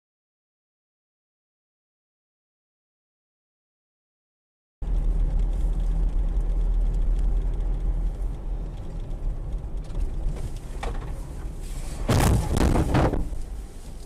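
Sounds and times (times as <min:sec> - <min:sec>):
car engine and road noise: 0:04.8 - 0:14.0.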